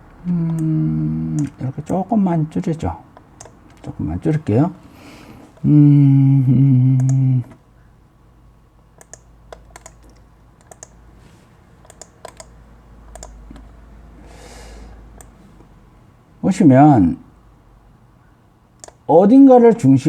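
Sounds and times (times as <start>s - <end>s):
man humming: 0.1s - 2.1s, 5.6s - 7.6s
computer keys clicking: 0.2s - 4.8s, 7.0s - 7.6s, 9.0s - 11.0s, 11.8s - 13.8s, 15.1s - 15.4s, 18.8s - 19.1s.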